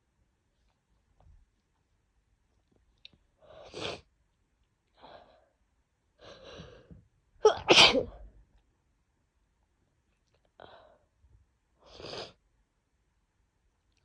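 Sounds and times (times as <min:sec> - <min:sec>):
woman sneezing: 0:07.5 - 0:08.2.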